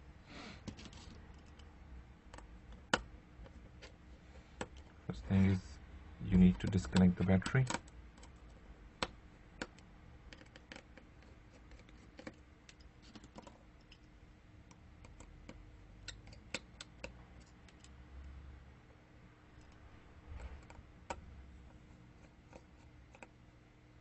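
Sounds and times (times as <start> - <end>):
small tools clicking on phone parts: 0.7 - 1.7, 6.5 - 14.1, 14.7 - 18.0.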